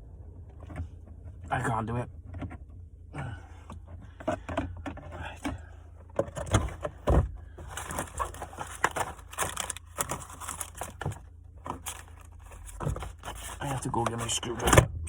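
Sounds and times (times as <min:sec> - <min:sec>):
gear stick rattling: 0:07.6 - 0:14.6.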